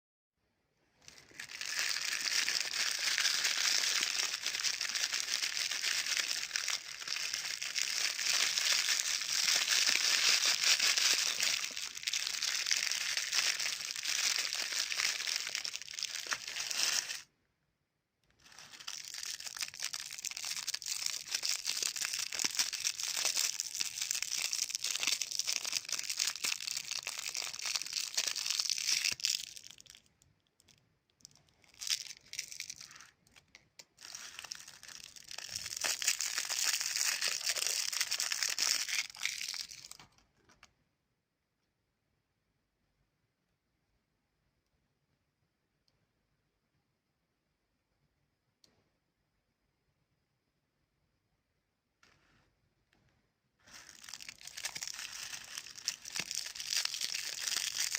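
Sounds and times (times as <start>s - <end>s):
plastic wrapper crinkling: 1.0s - 17.3s, 18.4s - 30.2s, 31.2s - 40.7s, 53.6s - 57.9s.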